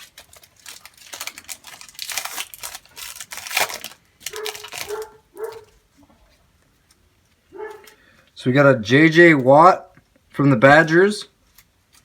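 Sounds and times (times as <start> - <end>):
card pack wrapper tearing and crinkling: 0.0 - 5.8.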